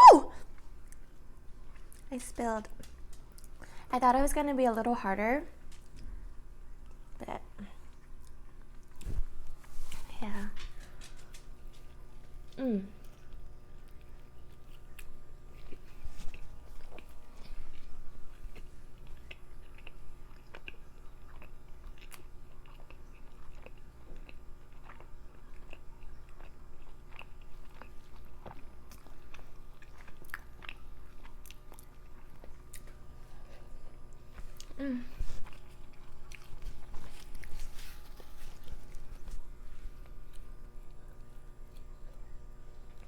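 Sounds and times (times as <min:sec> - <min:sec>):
chewing and biting food: 0:10.6 - 0:43.0.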